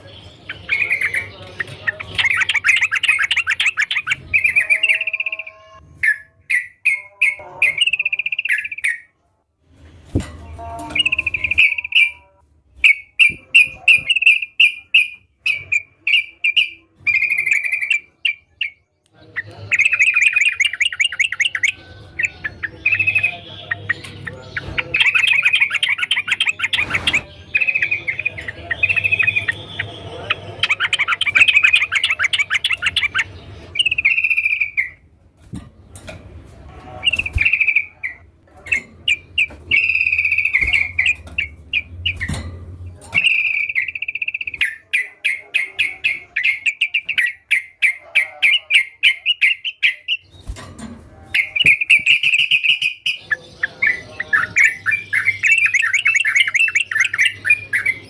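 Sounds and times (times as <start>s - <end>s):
bird singing bubbling chirps: 51.4s - 58.0s.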